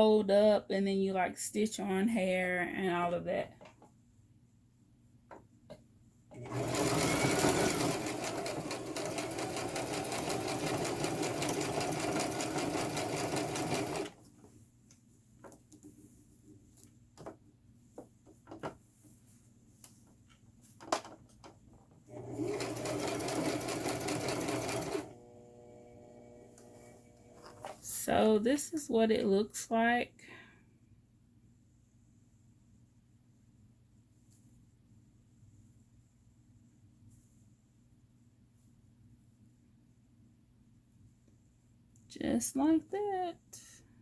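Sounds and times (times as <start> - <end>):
sewing machine stitching: 6.3 - 14.2, 22.1 - 25.4.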